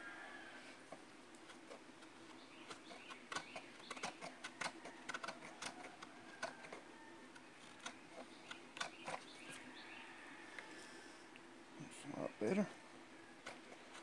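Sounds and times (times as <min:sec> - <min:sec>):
hand tool snipping plastic: 0:02.6 - 0:06.8.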